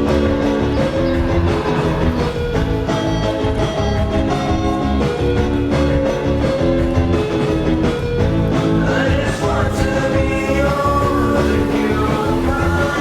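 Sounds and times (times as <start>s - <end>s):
pop-rock song with guitar and drums: 0.0s - 13.0s
person singing: 8.8s - 13.0s.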